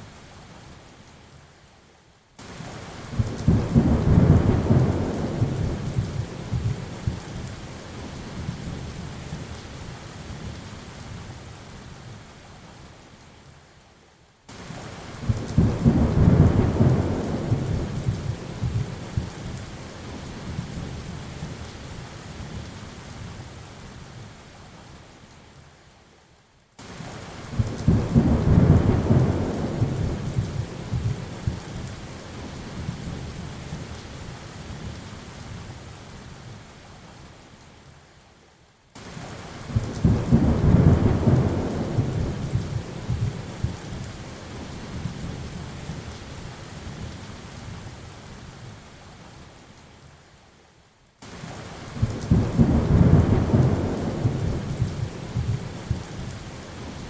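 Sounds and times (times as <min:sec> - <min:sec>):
steady rain: 0:00.0 - 0:57.0
rolling thunder: 0:39.8 - 0:43.8, 0:52.0 - 0:56.0.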